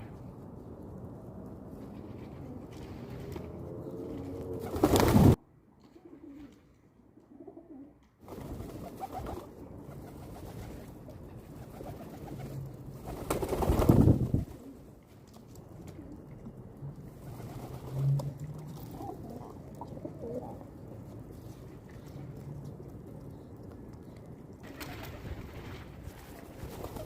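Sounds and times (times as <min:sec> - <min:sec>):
pigeons cooing: 0:07.3 - 0:08.0, 0:17.2 - 0:21.0.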